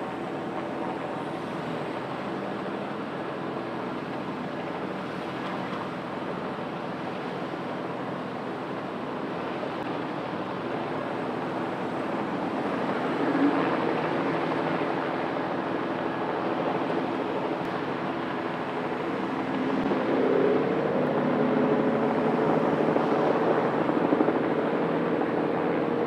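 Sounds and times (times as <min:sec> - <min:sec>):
helicopter running: 0:09.9 - 0:26.0.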